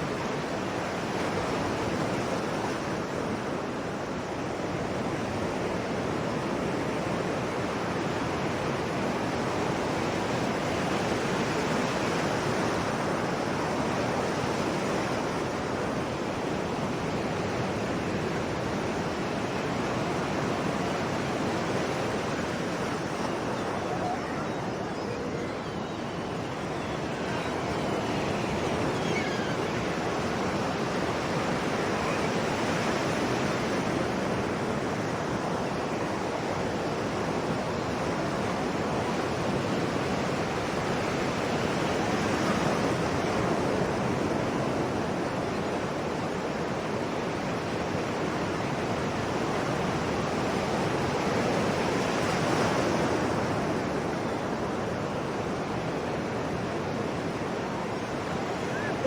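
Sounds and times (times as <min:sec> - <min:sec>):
sea waves breaking on shore: 0:00.0 - 0:59.0.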